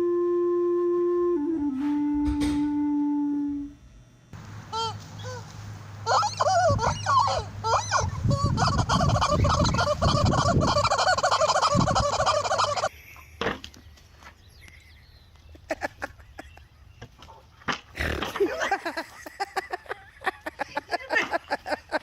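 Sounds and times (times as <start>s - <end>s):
fowl warbling calls: 4.7s - 12.9s.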